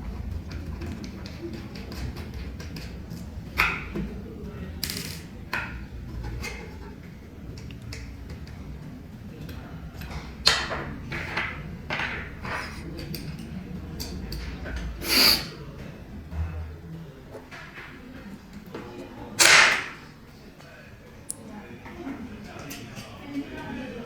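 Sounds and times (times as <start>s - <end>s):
plastic parts clicking and knocking: 4.8s - 6.9s, 19.4s - 20.0s.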